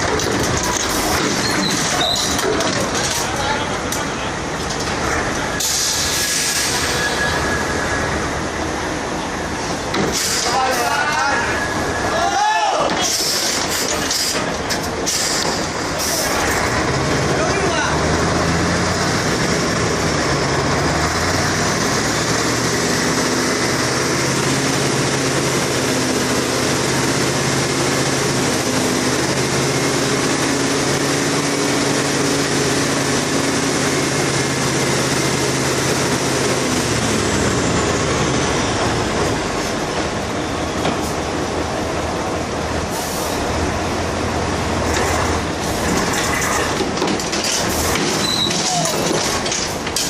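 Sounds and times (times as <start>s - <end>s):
heavy engine running: 0.0s - 50.0s.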